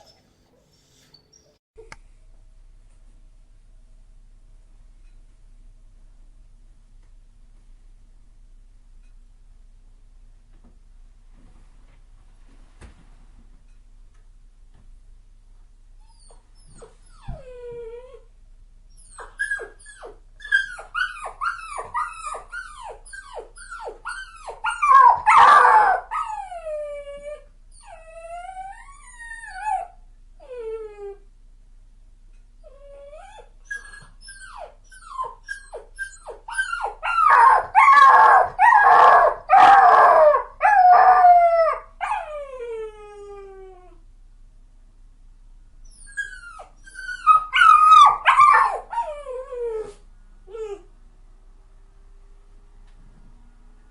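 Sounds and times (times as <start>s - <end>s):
dog whining and whimpering: 16.0s - 18.3s, 18.9s - 31.2s, 32.6s - 44.0s, 45.8s - 50.9s.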